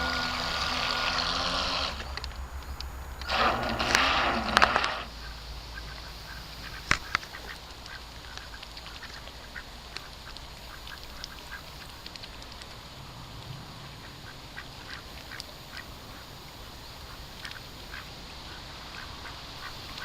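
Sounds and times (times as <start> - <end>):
sharp clicks: 1.8 - 5.1, 6.8 - 12.8
ducks quacking: 3.2 - 13.0, 13.6 - 20.0.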